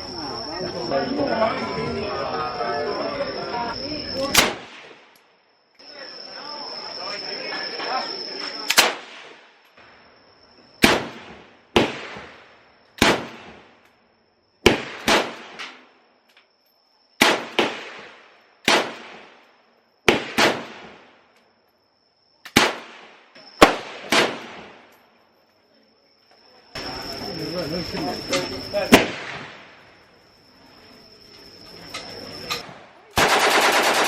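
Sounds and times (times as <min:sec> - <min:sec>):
high insect whine: 0:00.0 - 0:34.0
gunshots echoing: 0:10.8 - 0:13.7, 0:14.6 - 0:15.8, 0:17.2 - 0:19.3, 0:20.1 - 0:21.1, 0:22.6 - 0:24.8, 0:32.6 - 0:34.0.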